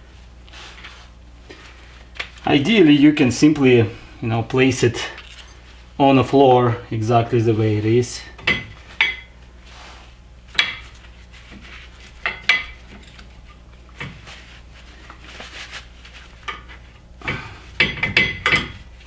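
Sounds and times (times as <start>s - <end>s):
faint low hum: 11.0s - 19.0s
metal brake pads clinking: 16.5s - 19.0s.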